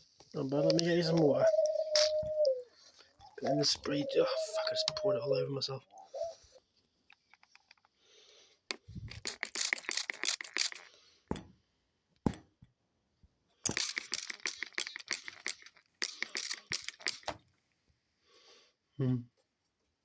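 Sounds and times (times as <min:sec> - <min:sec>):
wing flutters: 0:08.9 - 0:11.0, 0:13.7 - 0:17.4.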